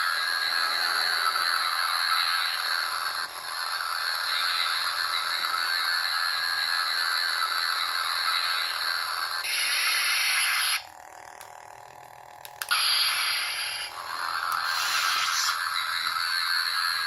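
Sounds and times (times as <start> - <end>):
toy lightsaber humming: 0.0 - 17.0
sharp clicks: 12.4 - 12.9.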